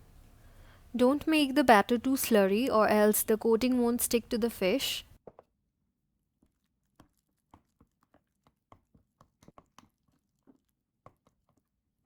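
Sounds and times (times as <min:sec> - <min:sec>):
batter stirred in a bowl: 0:06.3 - 0:12.0.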